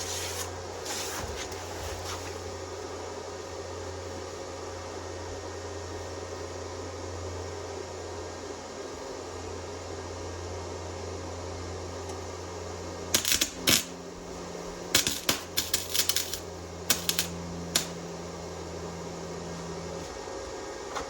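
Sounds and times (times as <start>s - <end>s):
steady hum: 0.0s - 21.0s
welder arc popping and crackling: 13.1s - 14.0s, 14.8s - 18.2s.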